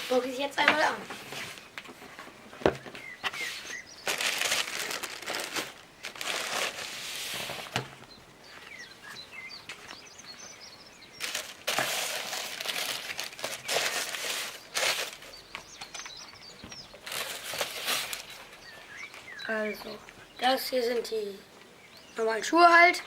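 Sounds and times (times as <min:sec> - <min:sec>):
faint bird chirps: 0:02.8 - 0:05.2, 0:08.0 - 0:23.0
paper packaging crinkling: 0:03.4 - 0:07.9, 0:11.2 - 0:16.2, 0:17.0 - 0:18.7.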